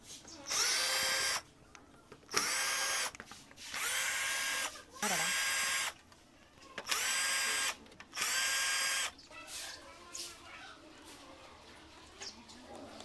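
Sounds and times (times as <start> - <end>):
electric drill whining: 0.5 - 1.4, 2.3 - 3.2, 3.8 - 6.0, 6.8 - 9.1.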